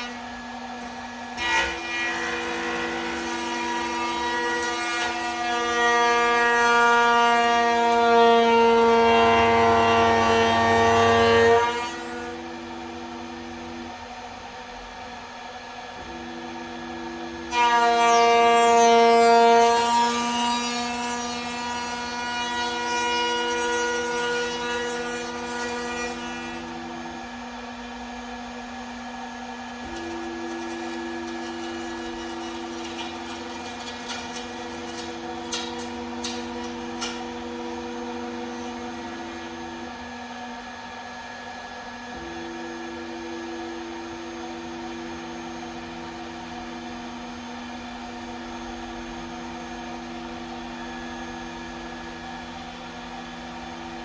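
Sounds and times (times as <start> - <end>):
cnc router humming: 15.0 - 45.6.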